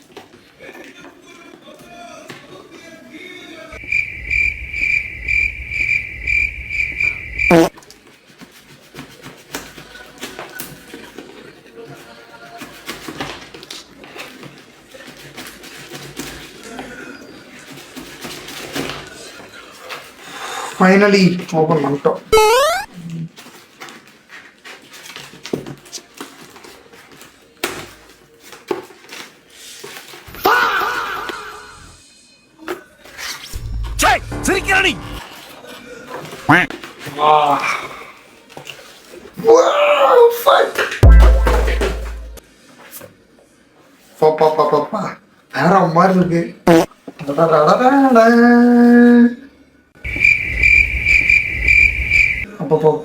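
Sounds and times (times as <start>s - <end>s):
cricket chirping: 3.8s - 7.7s, 50.0s - 52.4s
musical sound effect: 22.4s - 22.9s, 33.6s - 35.2s, 41.0s - 42.4s
loud downward-sweeping sound: 41.0s - 42.4s
loud knock: 41.0s - 42.4s.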